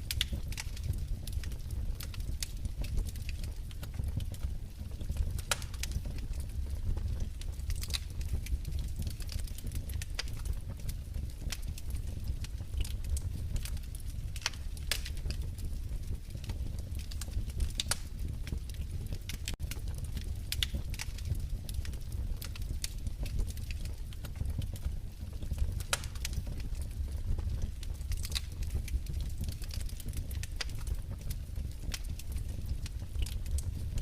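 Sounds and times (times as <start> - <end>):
wood fire crackling: 0.0 - 34.0.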